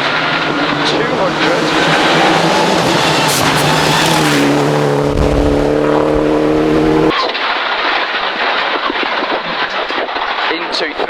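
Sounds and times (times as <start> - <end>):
car engine revving high: 0.0 - 7.1
exhaust cracks and pops: 0.1 - 6.3, 7.1 - 11.0.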